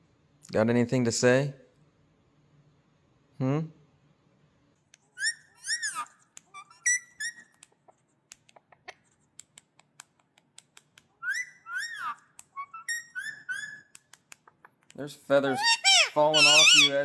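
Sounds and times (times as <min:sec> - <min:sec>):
parrot whistling: 0:05.2 - 0:07.6, 0:11.2 - 0:14.0, 0:15.4 - 0:17.0.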